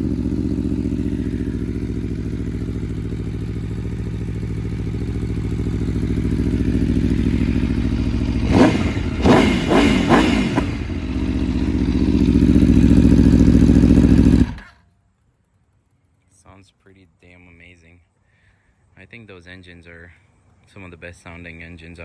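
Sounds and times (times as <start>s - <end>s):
motorcycle engine idling and revving: 0.0s - 14.9s.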